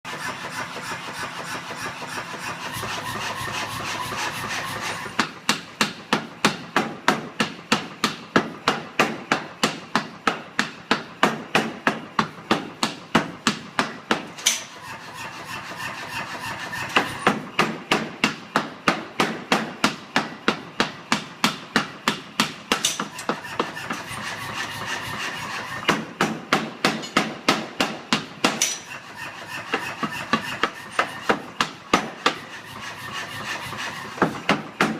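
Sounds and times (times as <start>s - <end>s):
power hammer striking steel: 0.1s - 34.9s.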